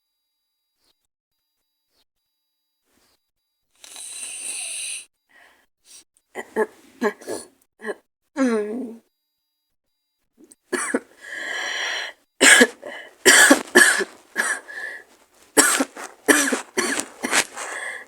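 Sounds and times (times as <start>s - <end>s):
drawn-out breath: 3.8s - 6.0s, 11.1s - 18.0s
woman coughing hoarsely: 6.4s - 8.0s, 10.7s - 11.1s, 12.4s - 15.0s, 15.6s - 18.0s.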